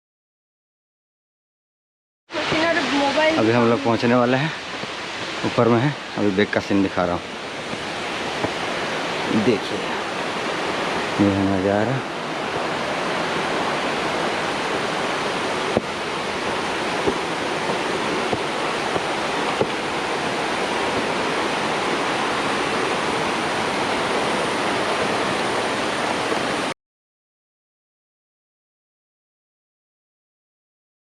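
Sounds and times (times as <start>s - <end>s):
waterfall rushing: 2.3s - 26.8s.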